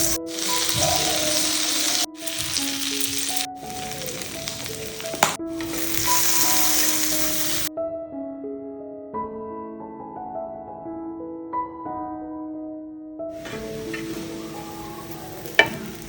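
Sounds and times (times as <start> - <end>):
bread rolls sizzling in oil: 0.0 - 7.7, 13.4 - 16.0
soft piano music: 0.0 - 16.0.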